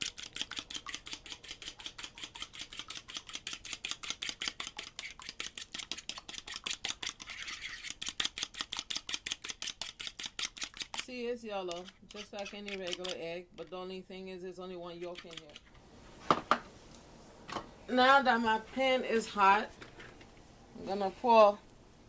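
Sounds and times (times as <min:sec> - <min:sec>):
whisk clicking against bowl: 0:00.0 - 0:11.1, 0:11.7 - 0:13.8, 0:15.0 - 0:15.6.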